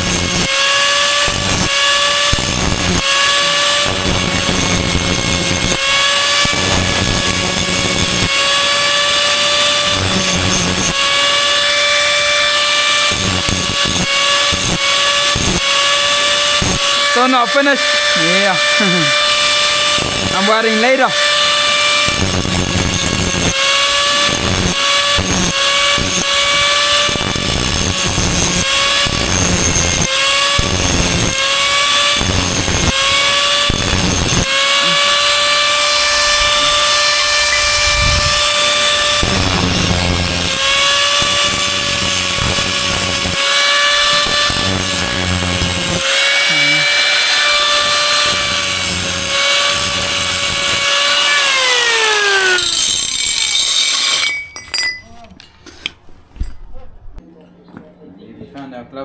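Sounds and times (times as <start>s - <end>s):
power tool whining: 0.0s - 54.9s
power tool working metal: 0.0s - 55.0s.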